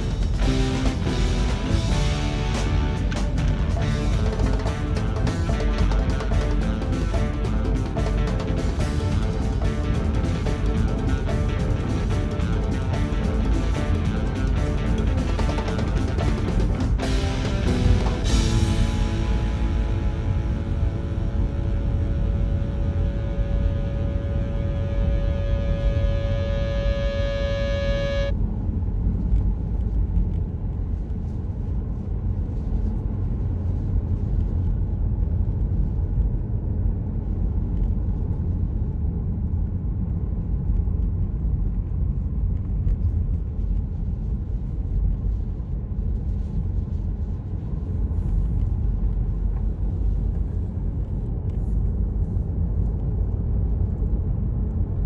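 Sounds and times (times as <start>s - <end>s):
car road and wind noise: 0.0s - 25.7s, 26.5s - 55.0s
music held chord: 0.0s - 28.3s.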